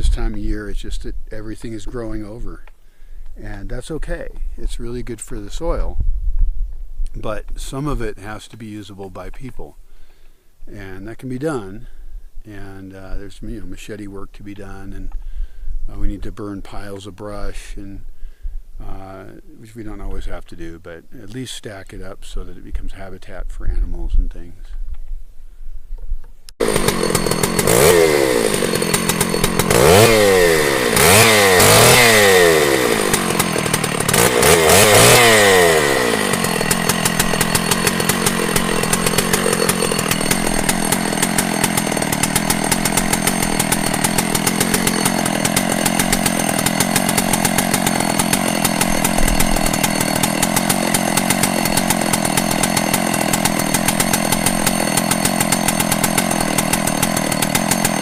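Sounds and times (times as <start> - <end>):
chainsaw revving: 26.6 - 58.0.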